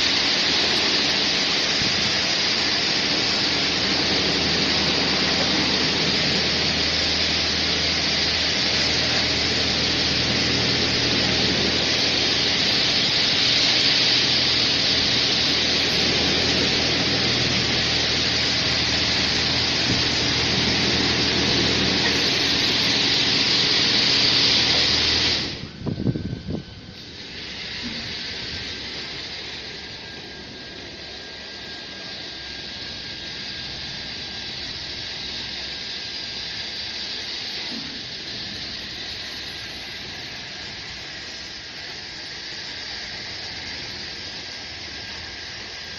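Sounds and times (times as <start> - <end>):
high-pressure water spray hissing: 0.0 - 45.9
low machine hum: 0.0 - 45.9.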